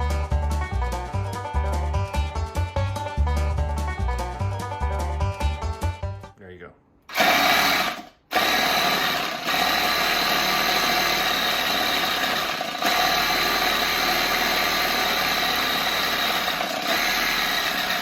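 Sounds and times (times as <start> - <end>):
electric paint can shaker whining: 7.1 - 18.0.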